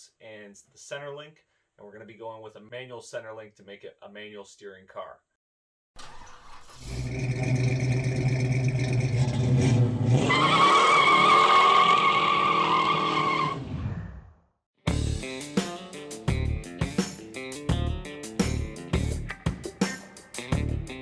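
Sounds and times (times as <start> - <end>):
car engine revving: 6.0 - 13.1
music: 14.9 - 21.0.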